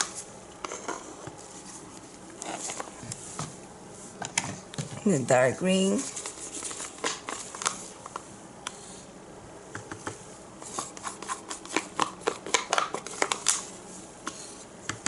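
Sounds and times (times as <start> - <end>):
plastic cups clicking and scraping: 9.8 - 13.6.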